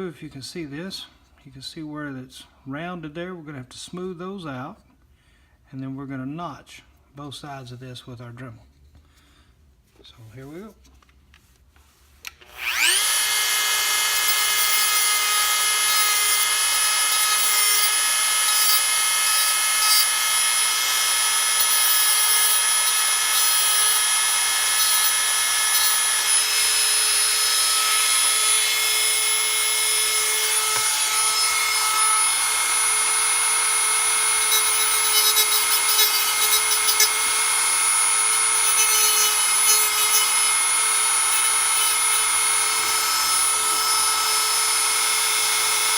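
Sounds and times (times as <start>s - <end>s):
rotary tool high whine: 12.4s - 45.9s.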